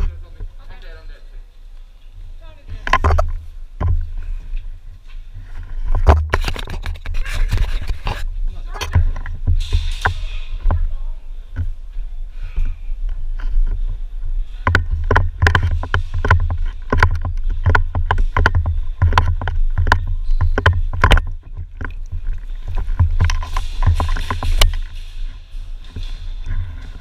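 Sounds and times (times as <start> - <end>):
sharp clicks and knocks: 2.8 - 4.2, 5.8 - 10.9, 14.5 - 27.0.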